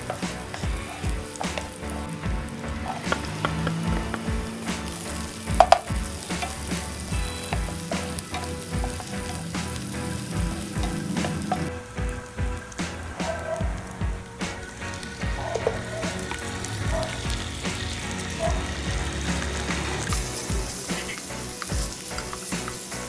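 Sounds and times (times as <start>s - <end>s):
food sizzling in a pan: 0.0s - 13.0s, 13.7s - 23.0s
utensil scraping a pan: 0.0s - 23.0s.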